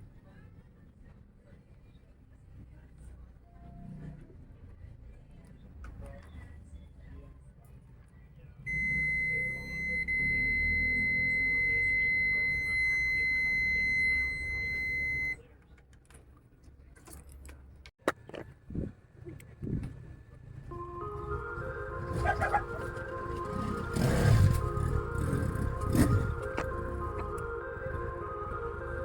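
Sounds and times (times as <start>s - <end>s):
high-pitched multimeter beep: 8.7s - 15.4s.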